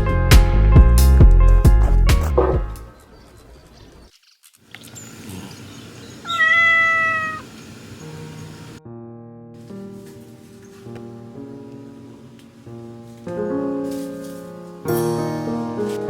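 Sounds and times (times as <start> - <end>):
cat meowing: 6.2 - 7.6.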